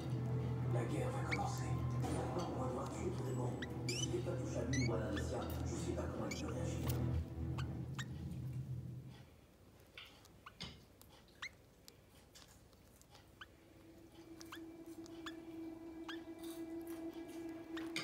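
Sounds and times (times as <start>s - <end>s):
canaries chirping: 0.0s - 9.2s, 9.9s - 18.0s
low hum-like tone: 13.8s - 18.0s.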